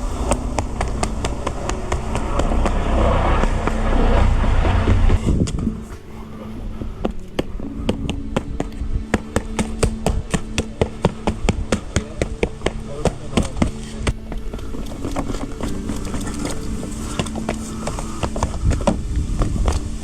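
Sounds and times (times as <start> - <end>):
loud low rumble: 0.0 - 20.0
steady low hum: 0.0 - 20.0
rapid tapping strikes: 7.0 - 19.0.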